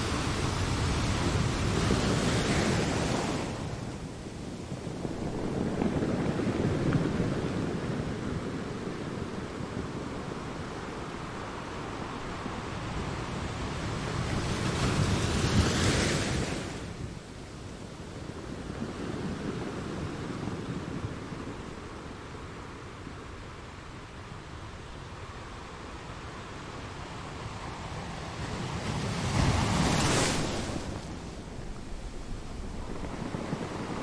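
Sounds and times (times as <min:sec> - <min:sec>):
waves breaking on rocky shore: 0:27.6 - 0:34.0.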